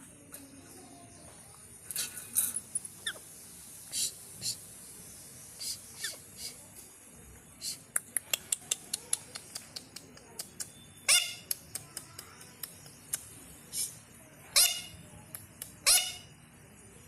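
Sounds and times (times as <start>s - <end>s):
parrot squawking: 11.1s - 11.4s, 14.5s - 15.0s, 15.8s - 16.3s.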